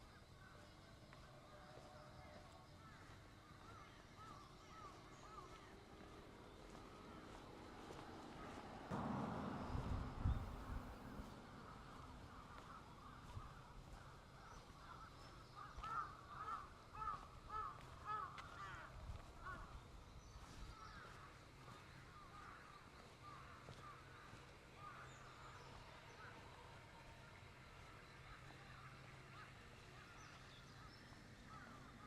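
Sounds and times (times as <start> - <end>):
distant birds calling: 0.0 - 32.0
low steady hum: 4.7 - 14.5.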